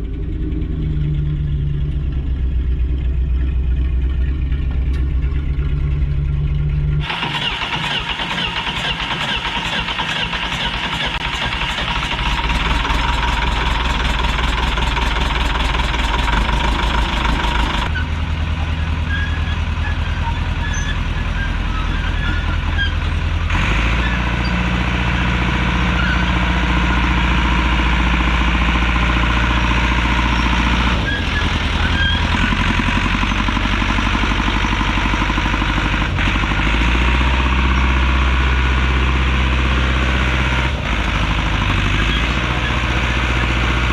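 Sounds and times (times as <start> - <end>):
heavy engine running: 0.0 - 43.9.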